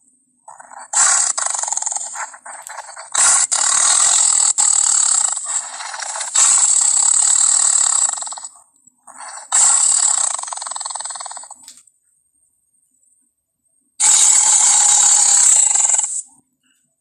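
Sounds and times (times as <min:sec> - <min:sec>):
raspy fluttering creature call: 0:00.5 - 0:11.7, 0:14.0 - 0:16.2.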